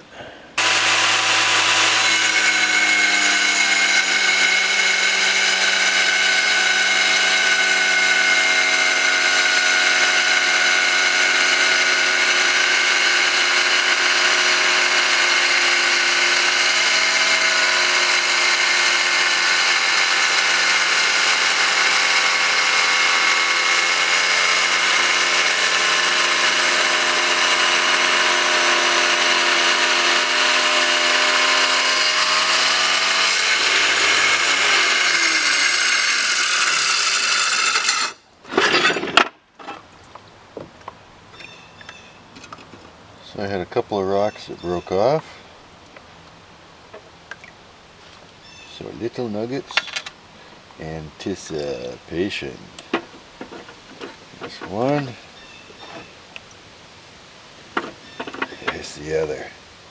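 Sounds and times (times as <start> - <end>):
tile saw cutting metal: 0.6 - 39.2, 51.4 - 55.2.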